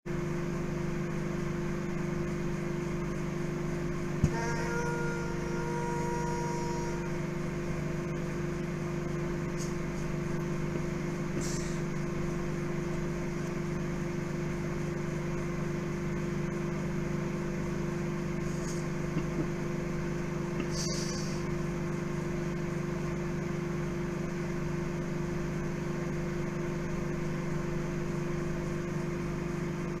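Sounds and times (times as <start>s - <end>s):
microwave oven humming: 0.1s - 30.0s
brief high hisses: 11.4s - 11.8s, 20.7s - 21.5s.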